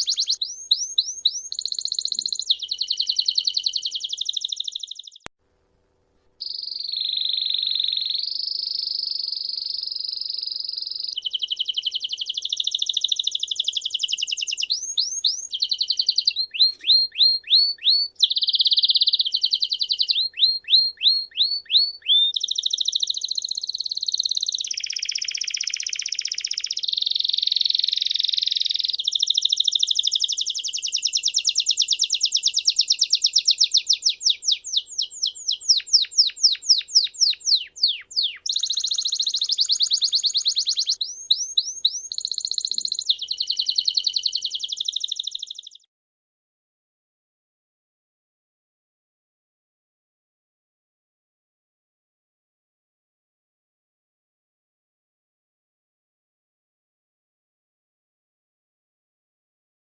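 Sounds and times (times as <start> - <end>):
songbird singing trills: 0.0 - 5.3, 6.4 - 45.9.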